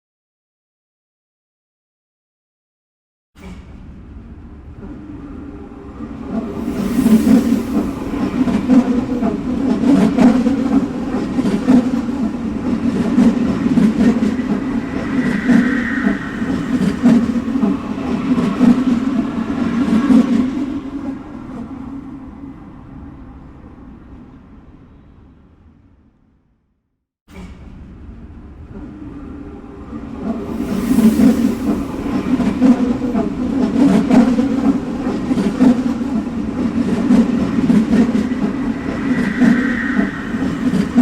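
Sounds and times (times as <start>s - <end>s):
subway train rumbling and clacking: 3.4s - 26.0s, 27.3s - 41.0s
high whine: 6.5s - 19.0s, 37.4s - 41.0s.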